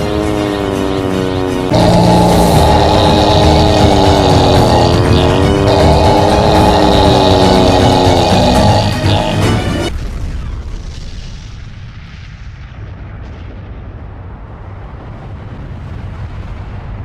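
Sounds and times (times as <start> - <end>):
deep rumble: 1.7 - 10.5.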